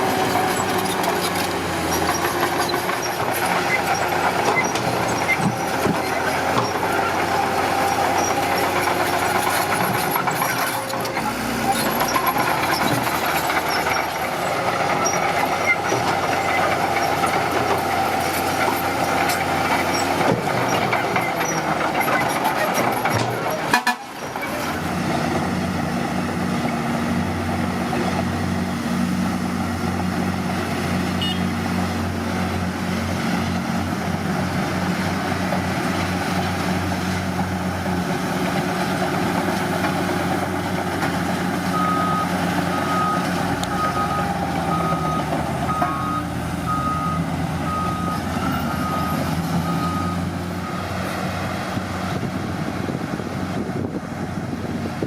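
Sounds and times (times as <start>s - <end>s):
heavy diesel engine running: 0.0s - 55.0s
reversing alarm beeping: 41.7s - 51.0s.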